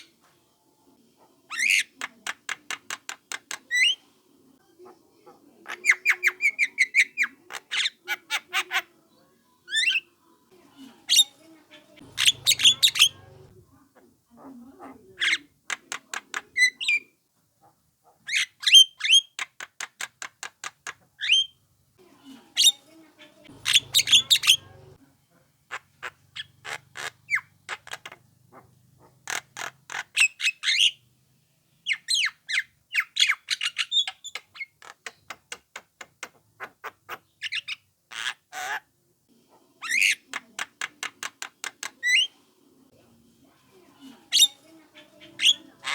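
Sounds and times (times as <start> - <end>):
bird harsh chattering: 11.1 - 14.1, 14.8 - 17.1, 22.6 - 25.0, 25.7 - 31.0, 39.8 - 42.3, 44.3 - 45.9
bird squawks: 11.1 - 17.1, 22.6 - 25.0, 39.8 - 42.4, 44.3 - 45.9.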